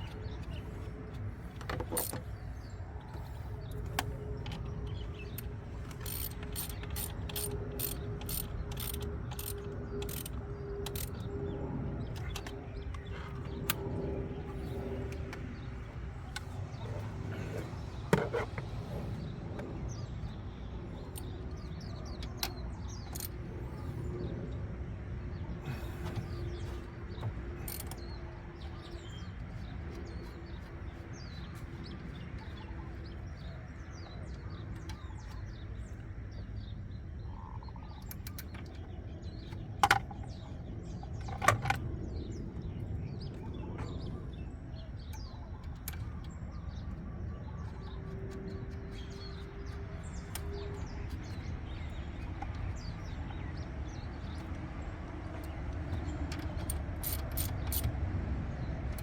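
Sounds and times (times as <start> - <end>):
birds chirping: 0.0 - 59.0.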